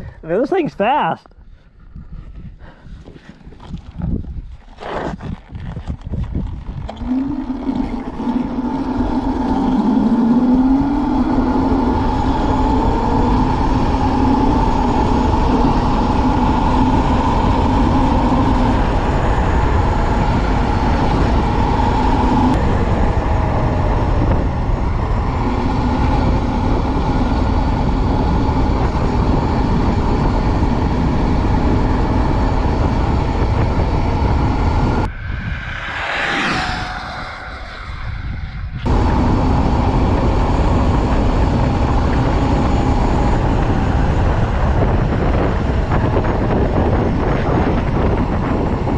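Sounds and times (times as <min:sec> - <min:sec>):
wind rumble on microphone: 0:01.3 - 0:48.9
electric motor whining: 0:06.8 - 0:35.1.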